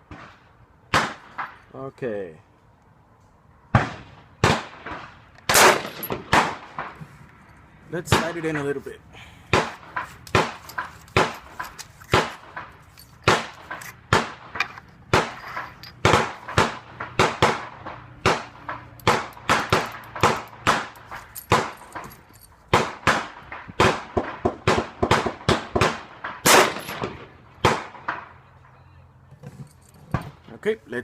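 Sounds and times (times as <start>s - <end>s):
rifle shots: 3.8s - 7.0s, 9.5s - 11.5s, 12.1s - 12.7s, 13.3s - 15.4s, 16.0s - 22.0s, 22.7s - 28.2s.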